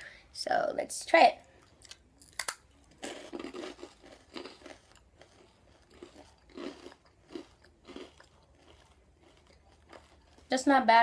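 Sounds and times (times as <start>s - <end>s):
crunchy rice crackers chewed: 1.6s - 10.7s.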